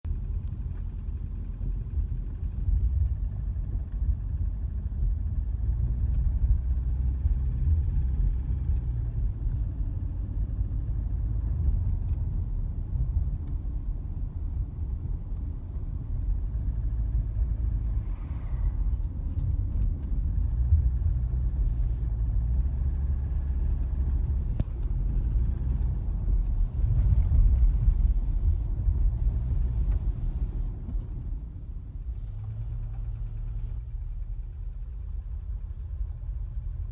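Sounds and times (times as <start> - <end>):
car engine rumbling with piston knock: 0.1 - 36.9.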